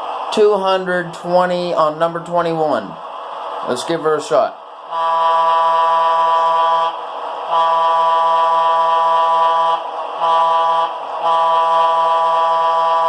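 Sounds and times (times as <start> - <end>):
locomotive air horn chord: 4.9 - 13.0.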